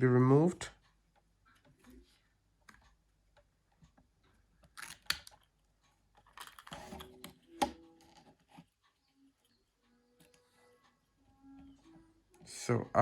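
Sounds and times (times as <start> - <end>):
plastic scraping: 6.2 - 8.7.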